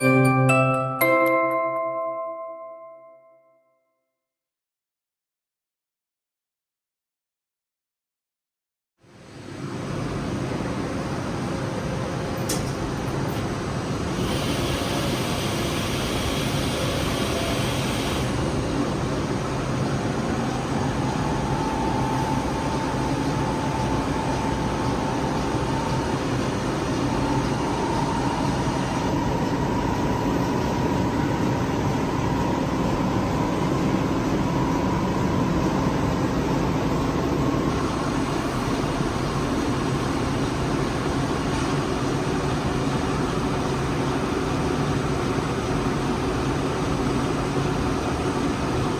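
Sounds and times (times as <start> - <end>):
lathe humming: 14.2 - 35.6
rising machine whine: 14.2 - 40.0.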